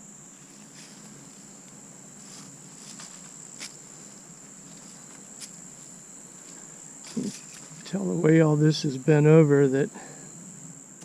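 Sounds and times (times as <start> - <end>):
crickets trilling: 0.0 - 11.0
footsteps on trail: 0.4 - 8.0.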